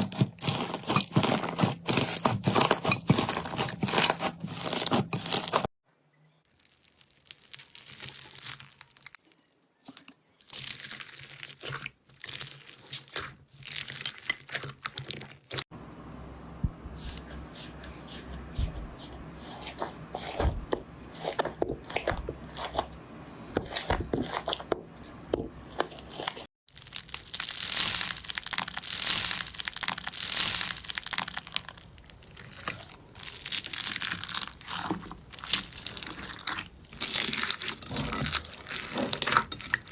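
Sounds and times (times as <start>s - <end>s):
slime squeezed crackling: 6.5s - 15.6s, 25.7s - 39.9s.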